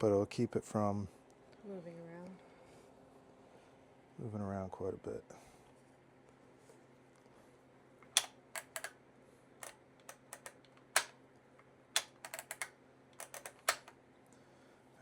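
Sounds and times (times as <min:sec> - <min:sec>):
tools clicking and tapping: 0:08.0 - 0:09.0, 0:09.6 - 0:11.2, 0:12.0 - 0:14.0.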